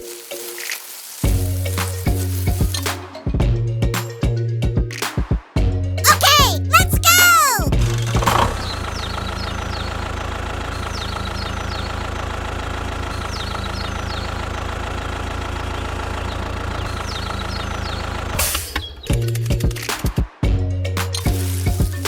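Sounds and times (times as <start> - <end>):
small engine idling: 8.7 - 18.4.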